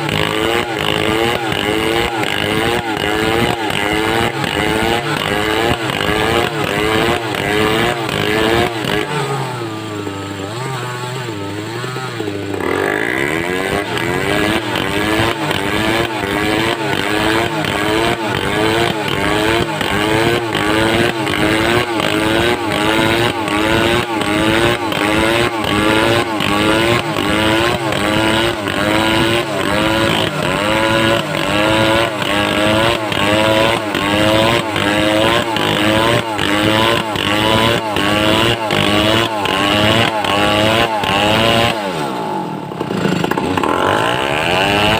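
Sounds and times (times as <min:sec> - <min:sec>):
chainsaw cutting lumber: 0:00.0 - 0:44.9.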